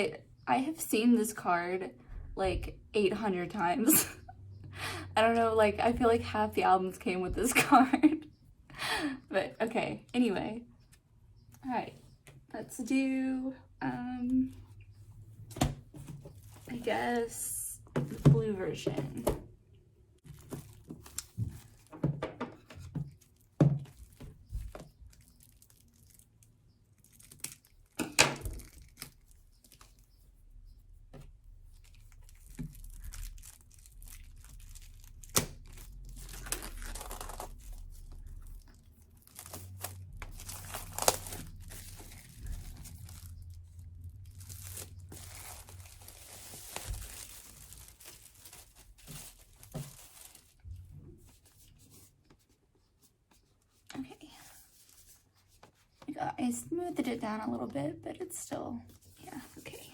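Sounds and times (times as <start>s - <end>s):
shrink-wrap tearing and crinkling: 25.1s - 29.9s, 31.8s - 50.6s.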